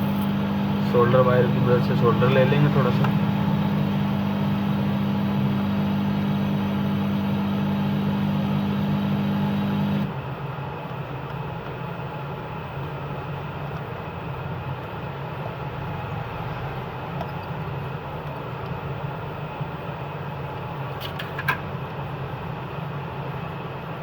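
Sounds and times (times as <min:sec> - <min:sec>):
low motor hum: 0:00.0 - 0:10.2.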